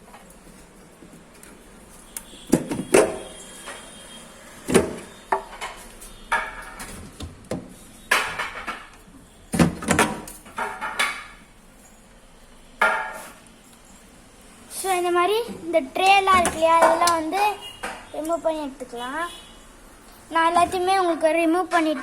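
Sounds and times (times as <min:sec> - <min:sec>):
plastic fridge trays clattering: 0:04.7 - 0:08.9, 0:09.5 - 0:11.3, 0:16.0 - 0:17.6, 0:20.4 - 0:21.2.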